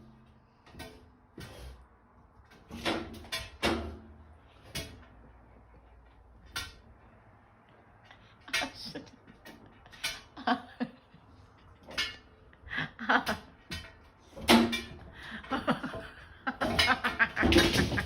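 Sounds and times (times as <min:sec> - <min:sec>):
people laughing: 0:08.5 - 0:11.2, 0:12.7 - 0:13.5, 0:15.2 - 0:18.0.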